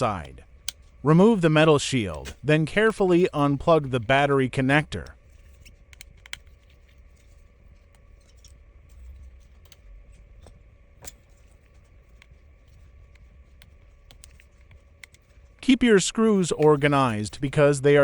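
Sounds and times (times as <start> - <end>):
low steady hum: 0.0 - 18.0
small tools clicking and tapping: 0.2 - 1.4, 4.7 - 15.6.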